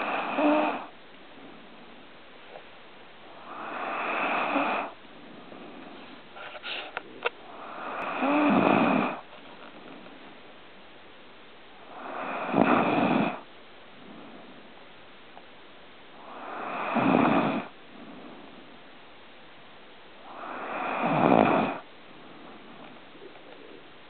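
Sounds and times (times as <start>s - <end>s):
pet snoring: 0.0s - 2.0s, 3.3s - 10.3s, 11.8s - 14.7s, 16.2s - 18.8s, 20.2s - 23.9s.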